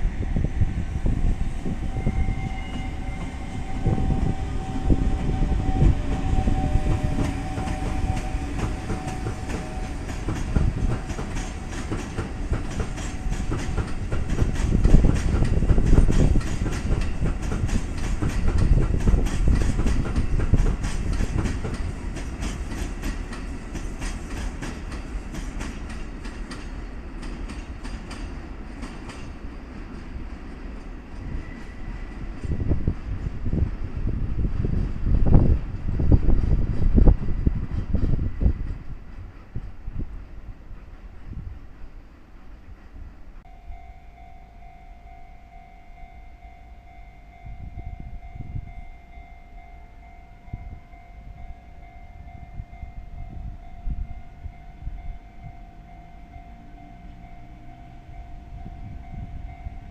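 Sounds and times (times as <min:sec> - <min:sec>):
train wheels clickety-clack: 0:01.0 - 0:43.5.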